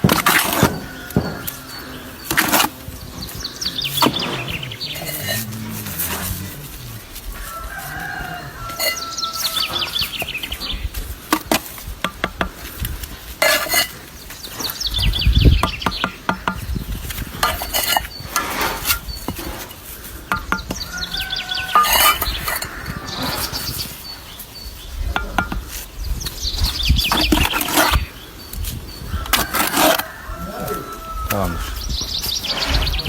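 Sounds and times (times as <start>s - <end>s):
small birds chirping: 0.0s - 33.0s
chicken calls: 0.3s - 11.0s, 13.4s - 33.0s
sharp knocks and clicks: 11.4s - 12.6s, 15.5s - 17.6s, 20.3s - 20.9s, 25.1s - 25.7s.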